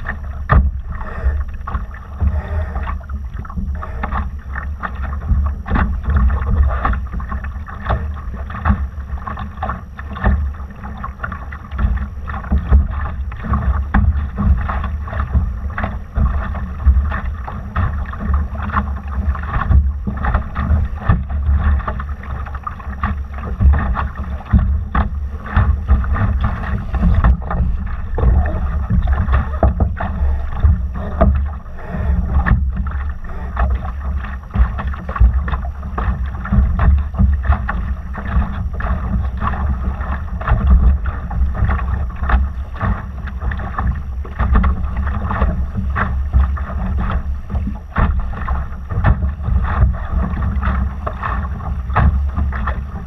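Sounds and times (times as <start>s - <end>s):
water splashing against boat hull: 0.0s - 53.0s
wind buffeting microphone: 22.9s - 53.0s.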